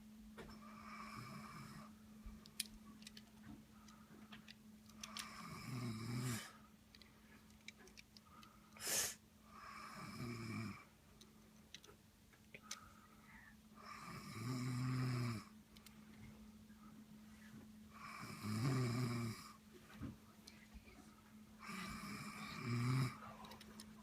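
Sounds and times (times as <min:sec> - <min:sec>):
man snoring: 0:00.7 - 0:01.9, 0:05.2 - 0:06.6, 0:09.5 - 0:10.9, 0:13.8 - 0:15.5, 0:17.9 - 0:19.6, 0:21.6 - 0:23.3.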